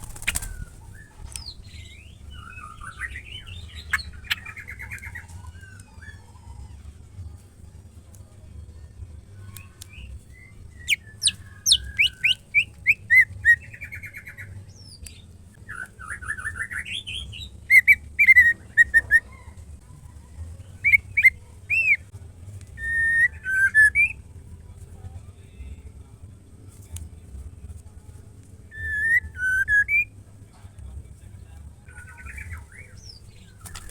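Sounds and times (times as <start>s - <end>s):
steady low hum: 0.0s - 33.9s
bird whistling calls: 10.0s - 14.5s, 20.8s - 22.0s, 22.8s - 24.2s, 28.7s - 30.1s.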